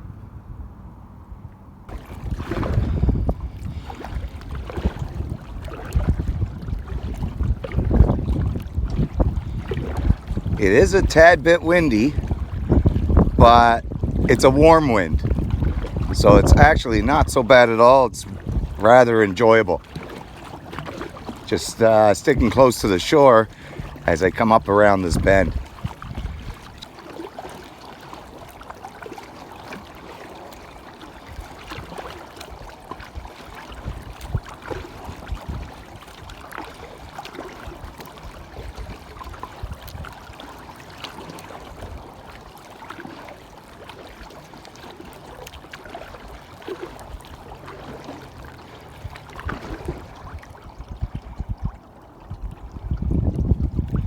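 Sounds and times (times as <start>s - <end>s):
wind buffeting microphone: 0.0s - 26.9s, 31.3s - 40.5s, 48.4s - 54.0s
water splashing from paddling: 1.9s - 54.0s.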